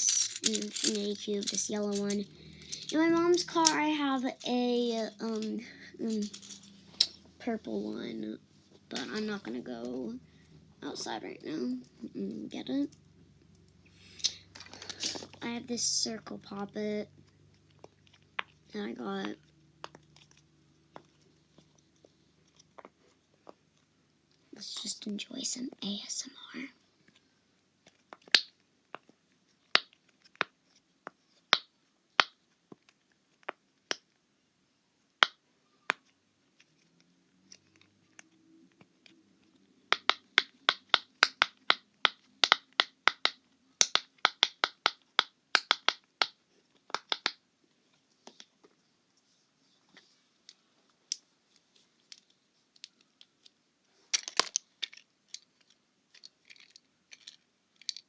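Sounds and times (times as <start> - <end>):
handling clicks: 0.0 - 7.2.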